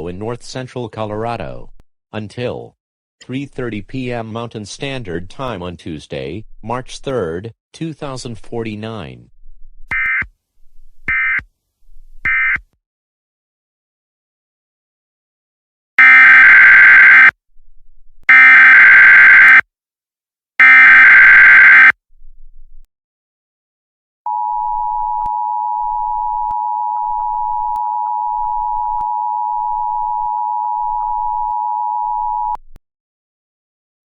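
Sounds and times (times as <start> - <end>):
digital data tone bursts: 20.6 - 21.9.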